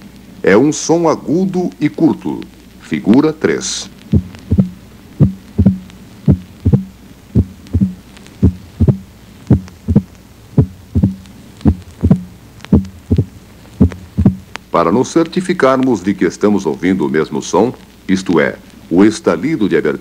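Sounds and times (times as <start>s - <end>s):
heart sounds: 4.1s - 14.5s.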